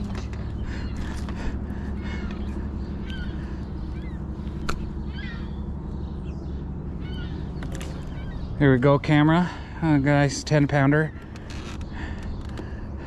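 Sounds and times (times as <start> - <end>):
birds chirping: 0.0 - 13.0
steady low hum: 0.0 - 13.0.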